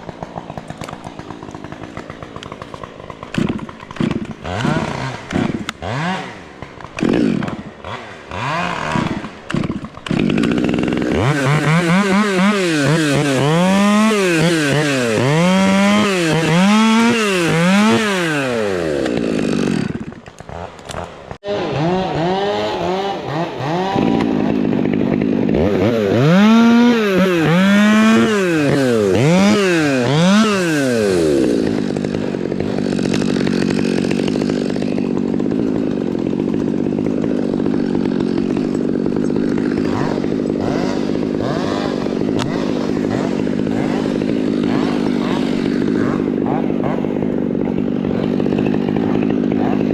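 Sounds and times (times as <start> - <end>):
chainsaw revving: 0.0 - 49.9.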